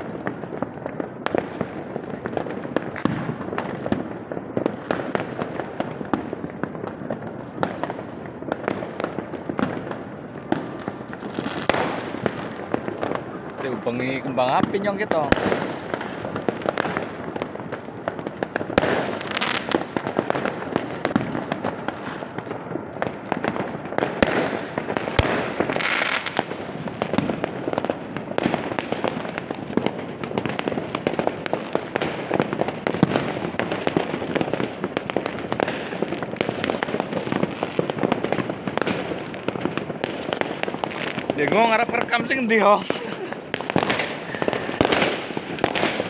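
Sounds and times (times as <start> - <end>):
fireworks crackling: 0.0 - 46.0
sharp firecracker reports: 13.6 - 15.5, 41.4 - 43.3.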